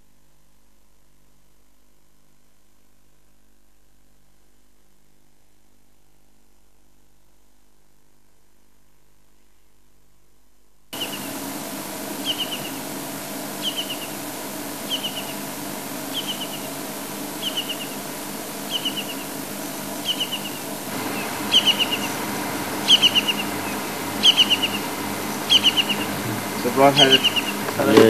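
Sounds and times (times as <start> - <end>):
steady low hum: 0.0 - 28.0
kingfisher calling: 11.0 - 28.0.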